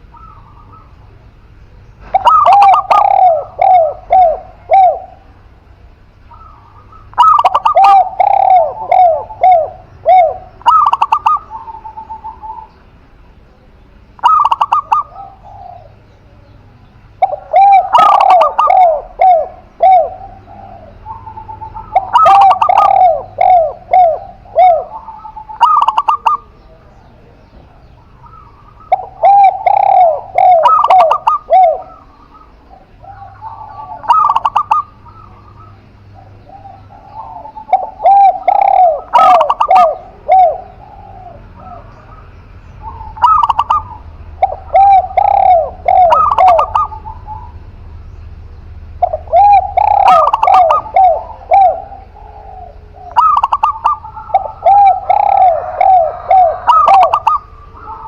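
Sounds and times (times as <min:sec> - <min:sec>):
doves cooing: 0:00.0 - 0:58.0.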